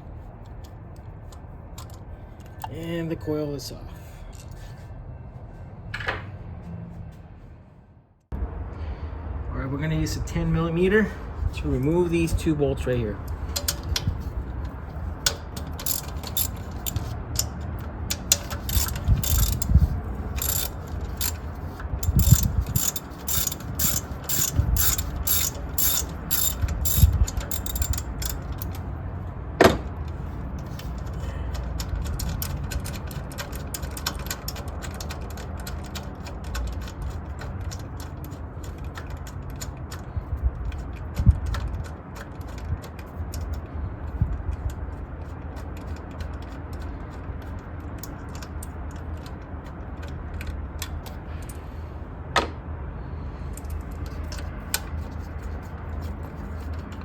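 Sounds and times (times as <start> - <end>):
ratchet wrench clicking: 13.3 - 28.8.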